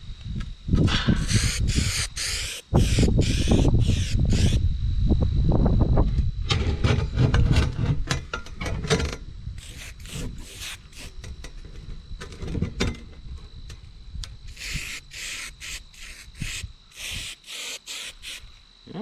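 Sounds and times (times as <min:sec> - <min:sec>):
wind buffeting microphone: 0:00.0 - 0:11.1
short hissing bursts: 0:01.0 - 0:04.6, 0:09.6 - 0:11.2, 0:14.5 - 0:18.6.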